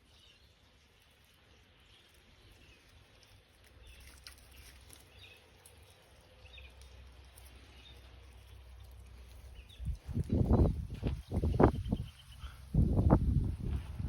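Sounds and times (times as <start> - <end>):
faint low wind rumble: 6.6 - 14.0.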